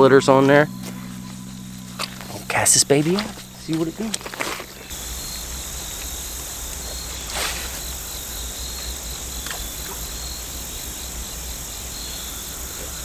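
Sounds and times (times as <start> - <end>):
low wind rumble: 0.0 - 9.4
crickets chirping: 0.0 - 13.0.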